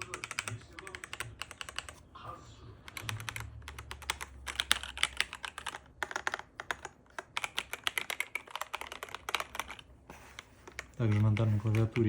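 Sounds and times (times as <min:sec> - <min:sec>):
mechanical keyboard typing: 0:00.0 - 0:02.0, 0:02.8 - 0:12.0.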